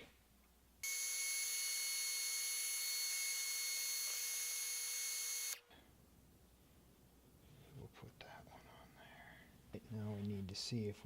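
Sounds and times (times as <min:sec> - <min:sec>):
heat gun blowing: 0:00.8 - 0:05.6.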